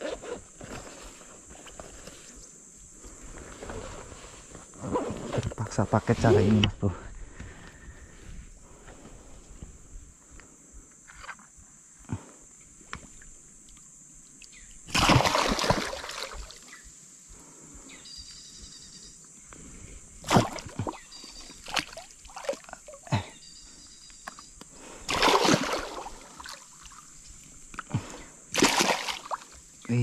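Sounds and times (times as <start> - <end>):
fish splashing at water surface: 14.9 - 16.6, 25.1 - 27.0, 28.5 - 29.6.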